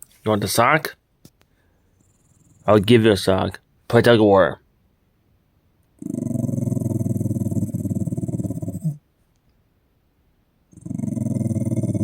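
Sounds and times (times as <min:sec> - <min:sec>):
dog growling: 0:06.0 - 0:09.0, 0:10.7 - 0:12.0.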